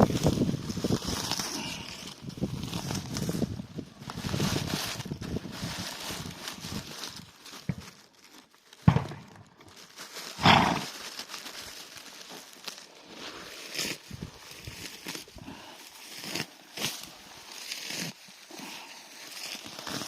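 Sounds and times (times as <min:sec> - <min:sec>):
animal snorting air through nose: 0:10.4 - 0:10.9.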